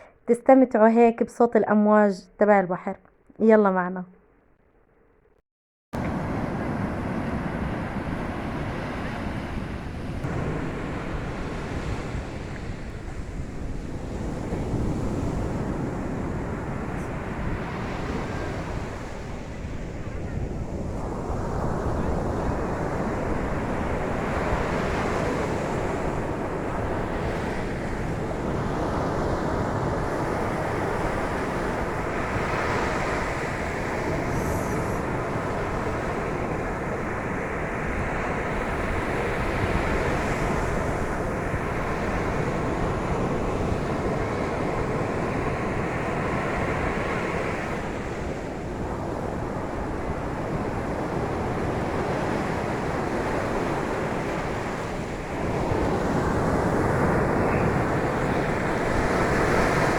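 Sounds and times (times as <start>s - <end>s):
waves breaking on beach: 6.0s - 59.9s.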